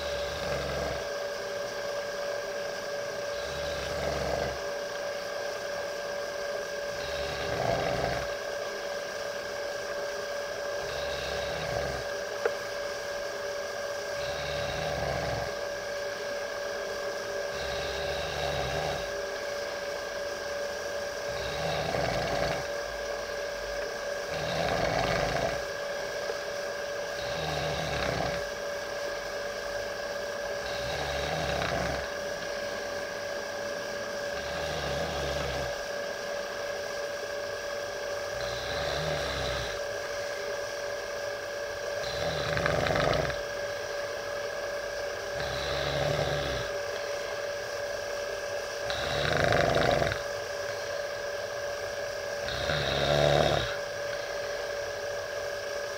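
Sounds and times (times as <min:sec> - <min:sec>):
pet snoring: 0:00.0 - 0:01.9, 0:03.1 - 0:05.3, 0:06.8 - 0:08.5, 0:10.4 - 0:12.7, 0:13.8 - 0:19.8, 0:21.0 - 0:22.8, 0:24.2 - 0:26.2, 0:26.9 - 0:36.7, 0:38.1 - 0:40.6, 0:41.9 - 0:44.1, 0:45.1 - 0:47.5, 0:48.7 - 0:51.2, 0:52.3 - 0:54.5
steady hum: 0:00.0 - 0:55.9.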